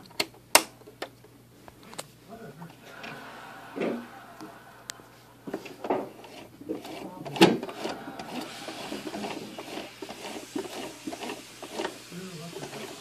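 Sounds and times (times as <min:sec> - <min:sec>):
sewing machine stitching: 0:05.5 - 0:13.0.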